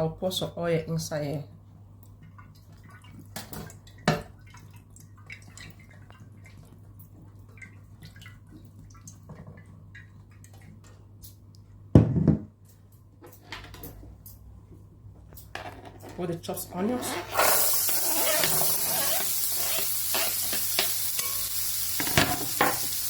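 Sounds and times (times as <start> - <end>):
oil crackling and popping in a pot: 17.4 - 23.0.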